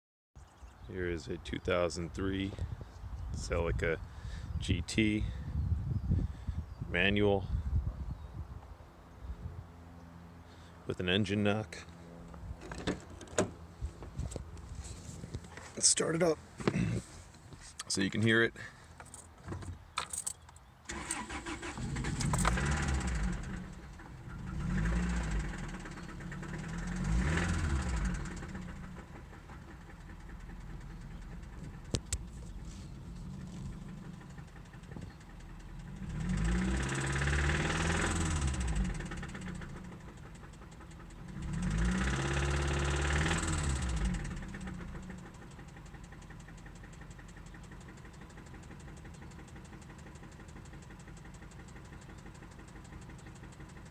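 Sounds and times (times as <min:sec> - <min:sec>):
car engine starting and revving: 0:20.9 - 0:53.9.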